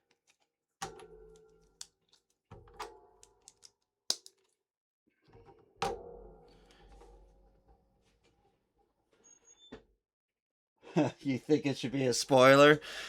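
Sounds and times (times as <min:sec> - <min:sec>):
plastic bricks clicking together: 0:03.2 - 0:04.5.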